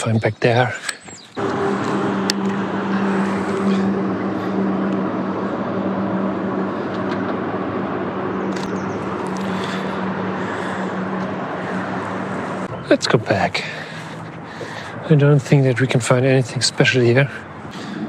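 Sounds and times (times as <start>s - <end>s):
vehicle engine hum: 0.0s - 18.0s
rushing noise: 1.4s - 15.8s.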